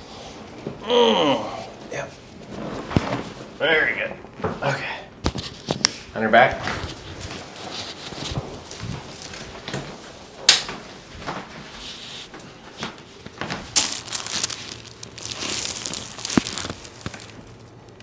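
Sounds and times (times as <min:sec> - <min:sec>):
rustling on treatment table: 0:05.3 - 0:18.0.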